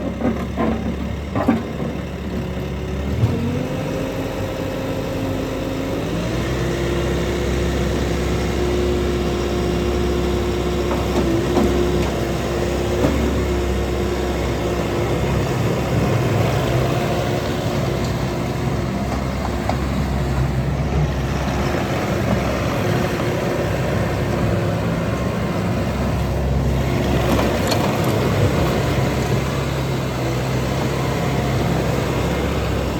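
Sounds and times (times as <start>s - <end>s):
loader diesel engine revving: 2.4s - 32.9s.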